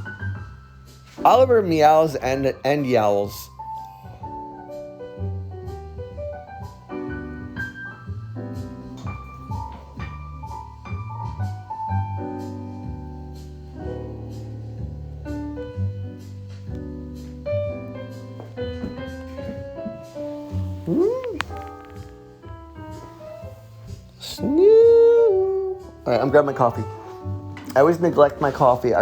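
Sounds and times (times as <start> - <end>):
piano jazz: 0.0 - 29.0
low bass line: 5.2 - 19.8.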